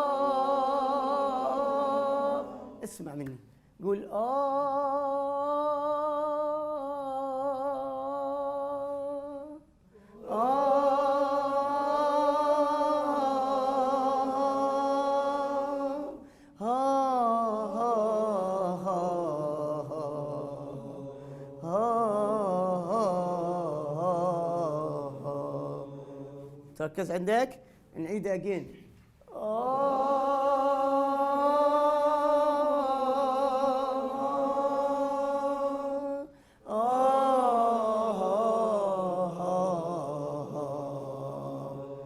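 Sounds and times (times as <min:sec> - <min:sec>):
man singing vocal exercise: 0:02.0 - 0:09.6.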